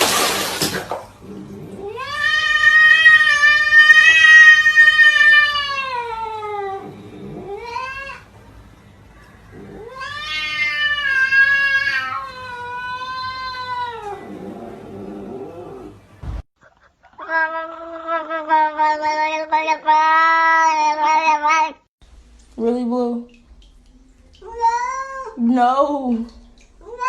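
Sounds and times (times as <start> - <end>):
cat yowling: 1.8 - 8.3, 9.5 - 14.4, 17.2 - 21.8, 24.4 - 25.4.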